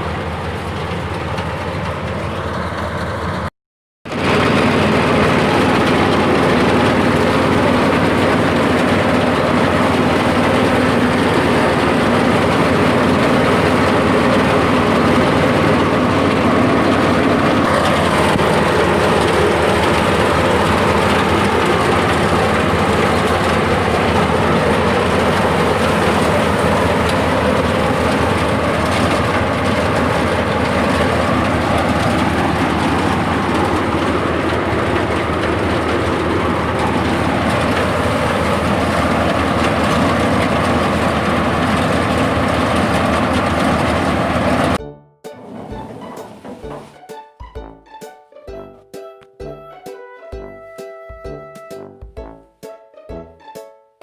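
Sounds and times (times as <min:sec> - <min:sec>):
engine running loudly: 0:04.1 - 0:44.8.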